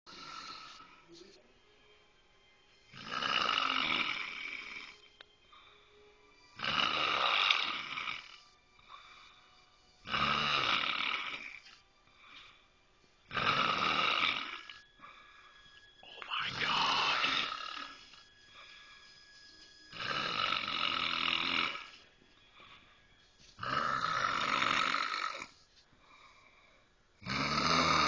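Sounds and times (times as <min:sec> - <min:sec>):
woman snoring loudly: 0:00.1 - 0:01.0, 0:02.9 - 0:05.1, 0:06.4 - 0:12.4, 0:13.2 - 0:15.0, 0:16.3 - 0:18.9, 0:19.9 - 0:22.1, 0:23.6 - 0:25.6, 0:27.2 - 0:28.0.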